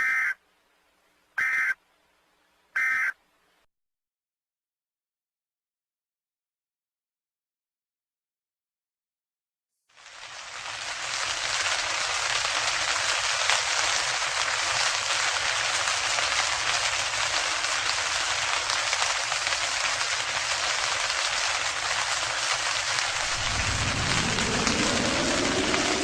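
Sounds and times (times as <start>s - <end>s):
heavy rain falling: 10.0s - 26.0s
low rumble: 22.9s - 26.0s
rising tone: 23.1s - 26.0s.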